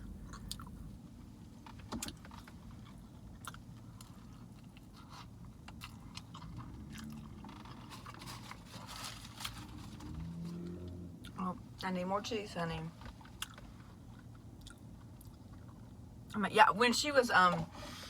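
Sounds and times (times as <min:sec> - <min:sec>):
person chewing food: 0:00.1 - 0:00.9, 0:01.9 - 0:08.6, 0:13.2 - 0:16.0.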